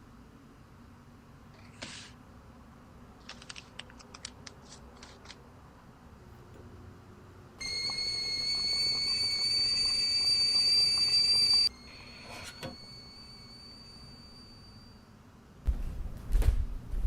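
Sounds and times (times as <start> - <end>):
kettle whistling: 7.6 - 15.0.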